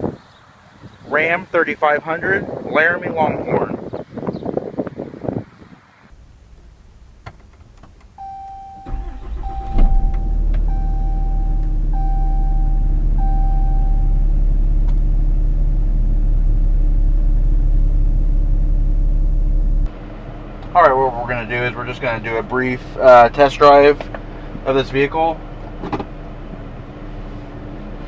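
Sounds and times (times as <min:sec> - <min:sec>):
diesel engine cranking and idling: 0:06.1 - 0:28.0
warning chime: 0:08.2 - 0:14.2.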